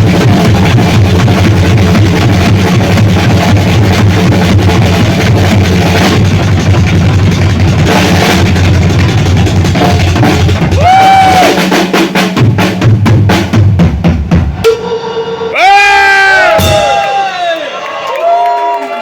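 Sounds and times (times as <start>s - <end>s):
rock drum solo: 0.0s - 17.5s
crowd yelling and cheering: 10.7s - 11.7s, 15.1s - 19.0s
person shouting: 10.8s - 11.6s, 15.5s - 17.8s.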